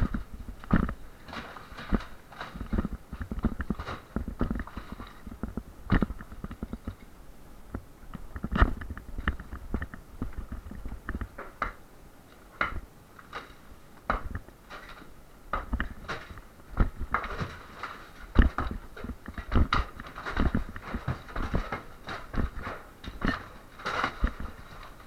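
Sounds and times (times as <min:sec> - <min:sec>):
debris rattling: 0:00.0 - 0:07.1, 0:12.6 - 0:25.0
walls being broken up: 0:00.0 - 0:07.1, 0:12.4 - 0:25.0.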